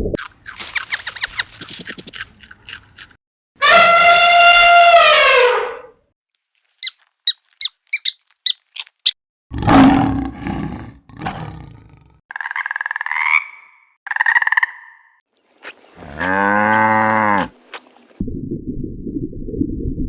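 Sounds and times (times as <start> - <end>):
buzzy animal calls: 6.8 - 12.1
loud rough roar: 9.5 - 12.1.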